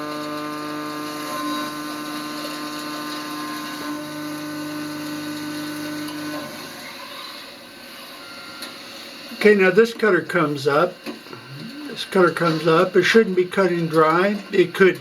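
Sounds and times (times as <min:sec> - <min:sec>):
milling machine whine: 0:00.0 - 0:15.0
noisy hiss: 0:08.8 - 0:15.0.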